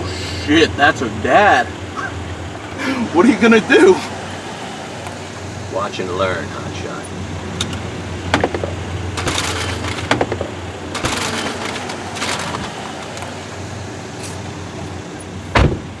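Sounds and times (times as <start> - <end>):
car engine humming: 0.0 - 16.0
rustling and crunching: 9.2 - 13.3.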